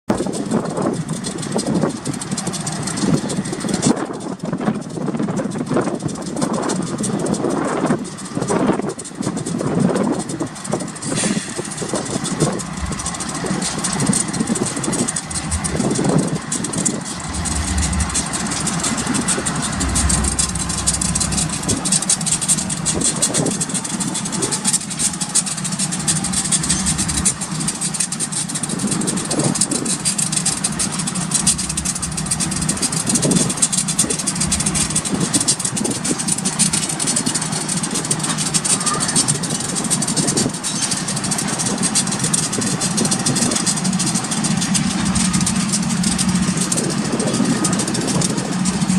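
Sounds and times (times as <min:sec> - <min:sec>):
diesel locomotives running: 0:00.1 - 0:48.9
hiss: 0:11.0 - 0:12.3.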